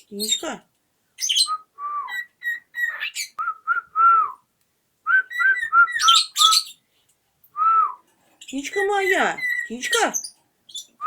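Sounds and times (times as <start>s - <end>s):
bird chirps: 1.2s - 3.4s, 5.3s - 6.8s, 8.4s - 11.0s
cockatiel whistling a tune: 1.2s - 4.4s, 5.1s - 6.8s.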